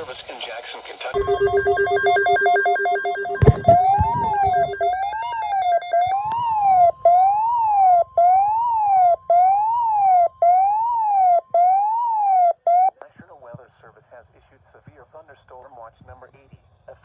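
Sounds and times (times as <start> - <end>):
steady warning alarm tone: 1.2 - 6.4
siren-like alarm sweeping: 1.2 - 12.9.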